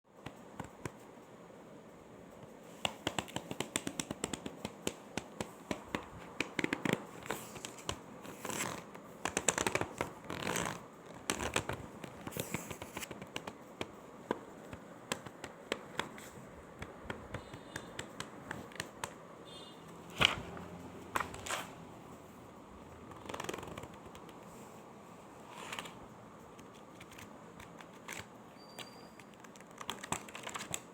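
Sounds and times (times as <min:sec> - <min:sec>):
book pages flicking and turning: 0:00.2 - 0:01.1, 0:02.4 - 0:19.2, 0:20.1 - 0:21.8, 0:23.0 - 0:24.8, 0:25.4 - 0:28.4, 0:29.1 - 0:30.9
pages riffling: 0:06.6 - 0:13.5, 0:23.1 - 0:24.3, 0:25.5 - 0:26.0.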